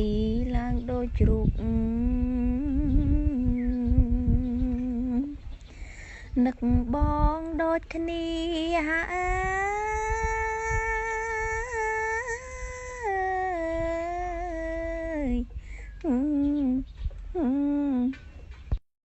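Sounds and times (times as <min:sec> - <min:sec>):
person singing long notes: 0:06.4 - 0:18.2.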